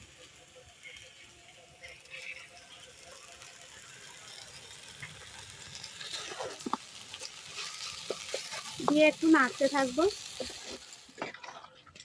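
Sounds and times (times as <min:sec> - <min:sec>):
faint cooking hiss: 0:00.0 - 0:12.0
spoon scraping a pan: 0:06.0 - 0:09.1.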